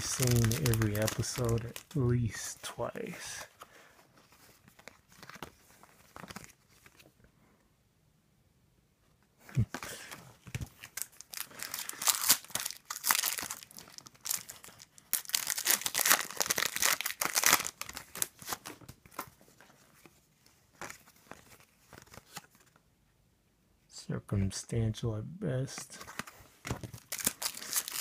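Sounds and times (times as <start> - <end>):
wrapper tearing and crinkling: 0.0 - 2.6, 9.8 - 19.2, 26.1 - 28.0.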